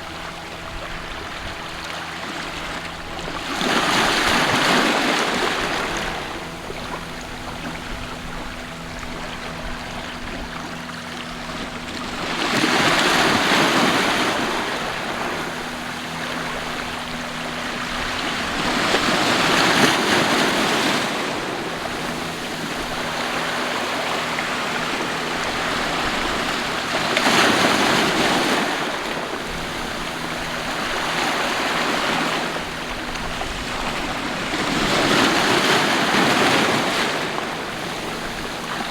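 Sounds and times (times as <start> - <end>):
sea waves washing onto shore: 0.0 - 38.9.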